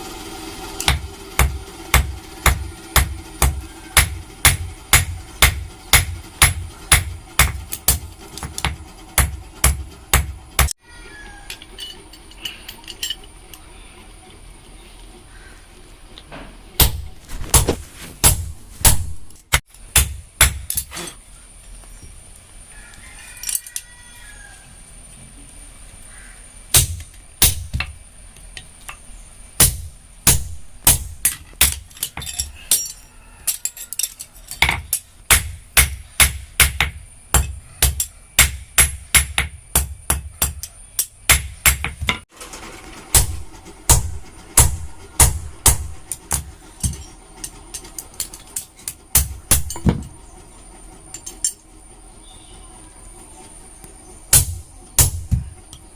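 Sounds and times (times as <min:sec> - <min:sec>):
hammer striking steel on anvil: 0:00.8 - 0:10.7, 0:16.8 - 0:21.2, 0:26.7 - 0:27.9, 0:29.6 - 0:42.2, 0:43.1 - 0:50.1, 0:54.3 - 0:55.9.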